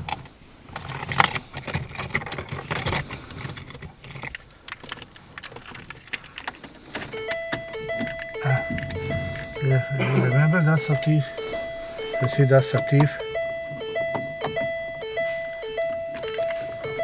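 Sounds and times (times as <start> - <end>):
parts clicking and rattling: 0.0 - 9.6, 11.4 - 17.0
beeping electronic tune: 7.1 - 17.0.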